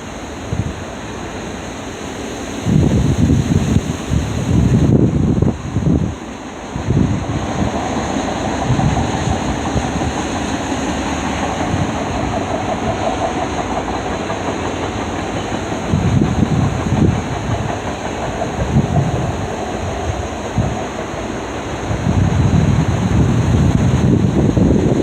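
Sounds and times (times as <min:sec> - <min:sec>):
wind buffeting microphone: 0:00.0 - 0:01.4, 0:02.5 - 0:25.0
freight train cars rolling: 0:00.0 - 0:25.0
steel wheels on rails: 0:00.0 - 0:25.0.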